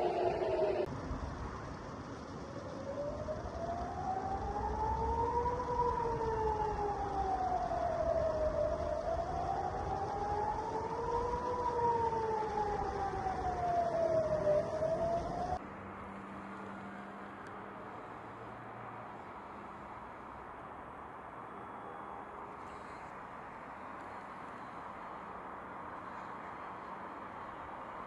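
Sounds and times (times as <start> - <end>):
air-raid siren wailing: 0.0 - 0.9, 2.3 - 15.6
low rumble: 0.0 - 7.4.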